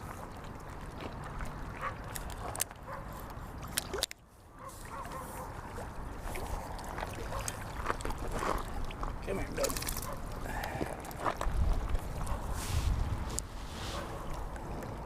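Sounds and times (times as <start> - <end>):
light water splashing: 0.0 - 15.0
wind rumbling on microphone: 10.0 - 15.0.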